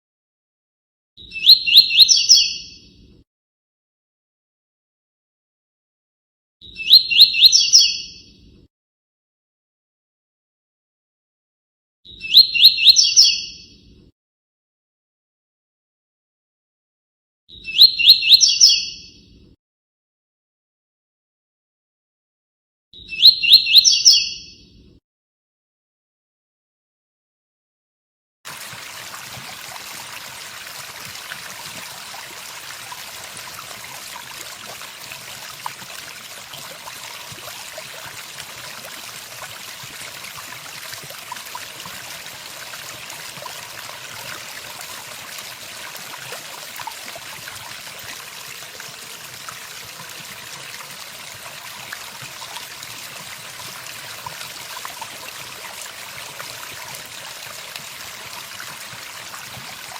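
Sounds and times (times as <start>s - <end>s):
stream water rushing: 28.5s - 59.9s.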